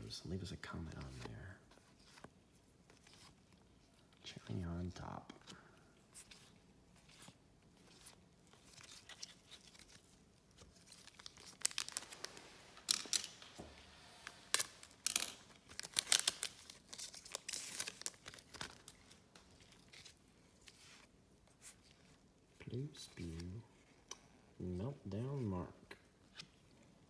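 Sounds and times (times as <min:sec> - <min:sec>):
wrapper tearing and crinkling: 0:08.6 - 0:20.2.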